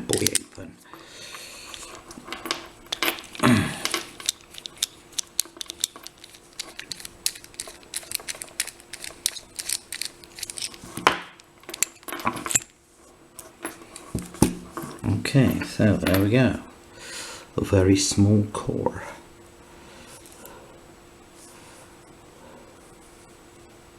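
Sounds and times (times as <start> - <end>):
padlock picking metallic clicks: 1.6 - 10.8.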